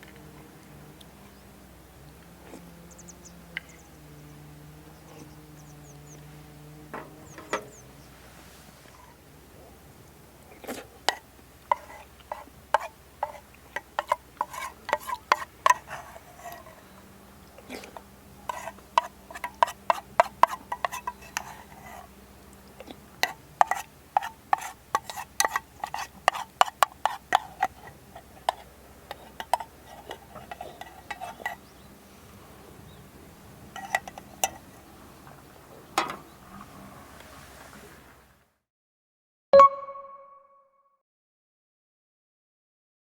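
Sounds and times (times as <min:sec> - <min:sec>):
spoon scraping metal cookware: 0:11.1 - 0:17.0, 0:17.6 - 0:22.1, 0:22.8 - 0:31.8, 0:33.7 - 0:34.8.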